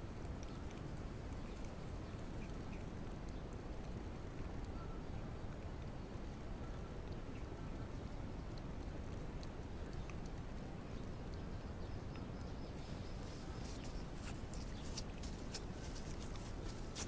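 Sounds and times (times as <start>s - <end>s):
low background hum: 0.0s - 17.0s
cat lapping milk: 12.8s - 17.0s.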